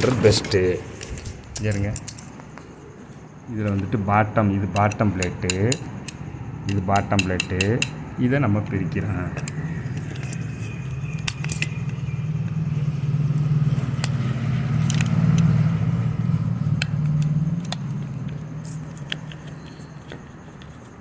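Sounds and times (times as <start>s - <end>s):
metal parts clicking and clinking: 0.0s - 2.4s, 9.2s - 12.1s, 14.8s - 15.7s, 16.3s - 21.0s
low engine hum: 8.8s - 18.9s.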